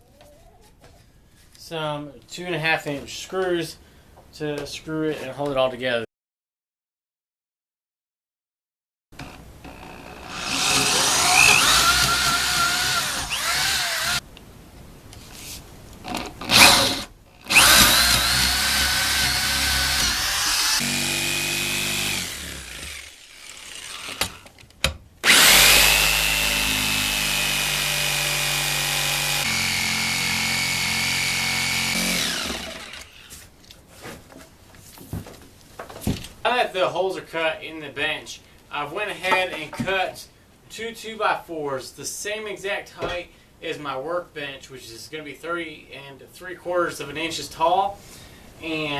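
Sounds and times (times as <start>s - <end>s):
power drill running in wood: 9.2s - 14.2s, 16.5s - 24.5s, 25.2s - 33.2s.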